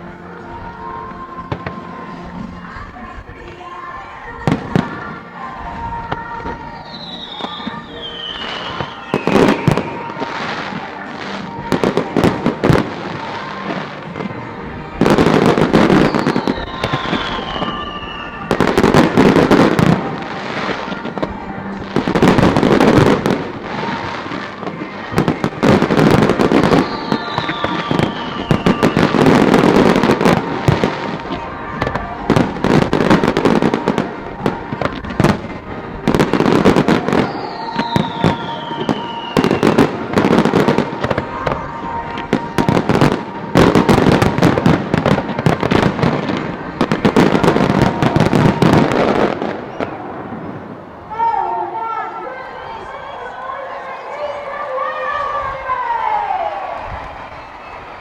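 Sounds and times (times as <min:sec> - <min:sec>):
fireworks bangs and crackling: 0:00.0 - 0:52.7
background music: 0:00.0 - 0:58.0
falling firework whistles: 0:06.7 - 0:10.7, 0:15.0 - 0:20.0, 0:25.2 - 0:34.0, 0:36.1 - 0:46.2.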